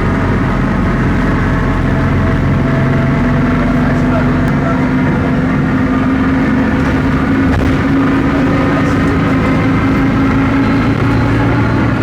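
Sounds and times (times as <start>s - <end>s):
diesel bus engine running: 0.0s - 12.0s
differential growling drone: 0.0s - 12.0s.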